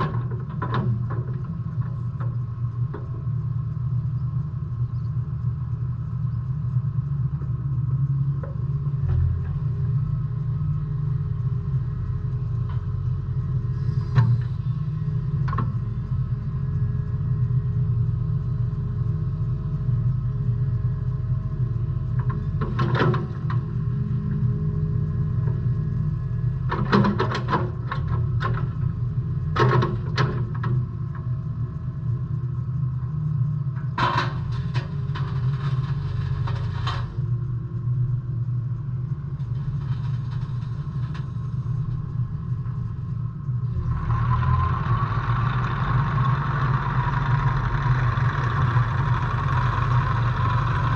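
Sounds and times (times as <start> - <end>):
excavator diesel engine running: 0.0 - 50.9
metallic clanking and knocking: 33.9 - 37.2.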